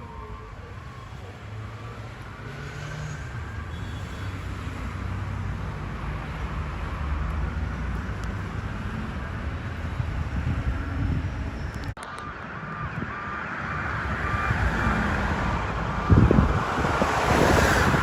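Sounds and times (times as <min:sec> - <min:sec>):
faint siren: 0:00.0 - 0:04.9, 0:11.6 - 0:16.7
road noise: 0:00.0 - 0:18.0.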